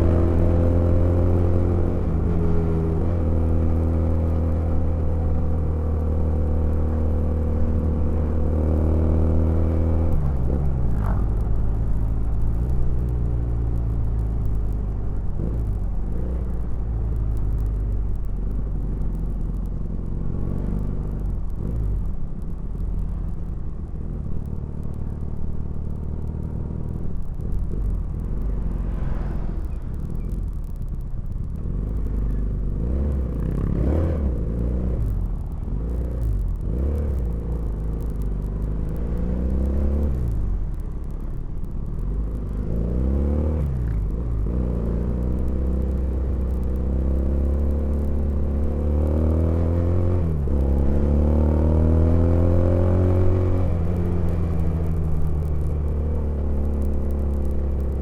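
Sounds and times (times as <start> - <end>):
motorcycle engine revving: 42.1 - 58.0.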